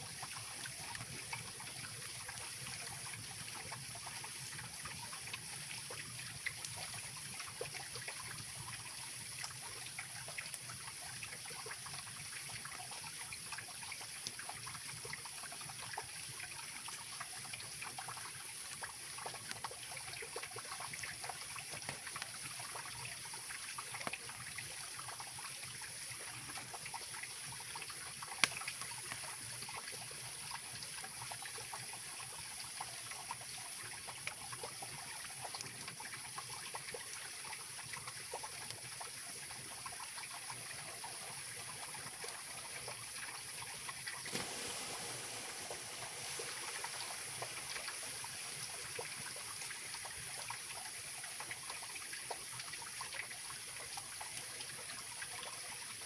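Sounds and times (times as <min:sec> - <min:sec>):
campfire crackling: 0:27.8 - 0:29.8, 0:44.2 - 0:50.8
river rushing and trickling: 0:44.2 - 0:50.6.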